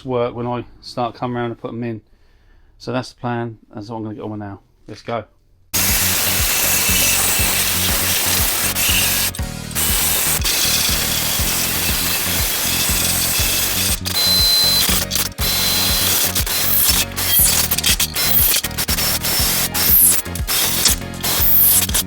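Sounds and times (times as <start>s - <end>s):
background music with beat: 5.8s - 22.0s
power tool on sheet metal: 5.8s - 22.0s.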